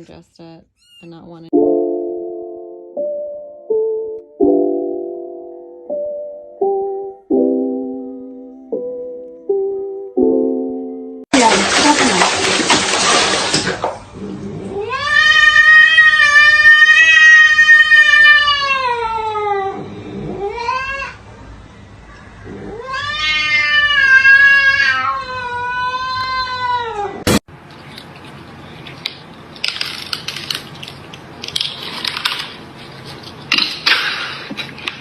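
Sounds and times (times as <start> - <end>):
cat yowling: 14.7 - 21.2, 22.5 - 27.3.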